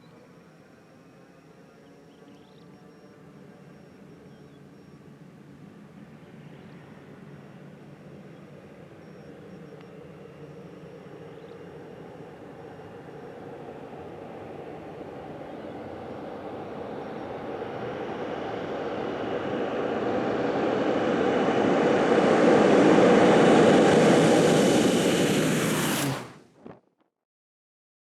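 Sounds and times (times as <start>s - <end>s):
turboprop aircraft engine: 0.0s - 26.6s.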